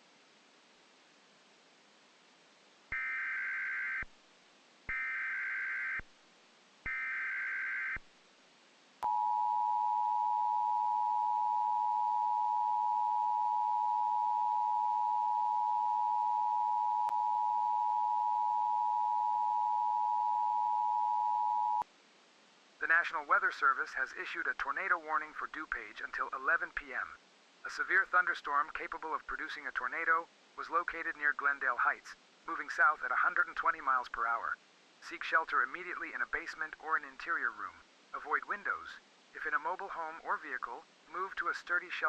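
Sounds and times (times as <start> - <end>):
two-tone attention signal: 9.0 - 21.8.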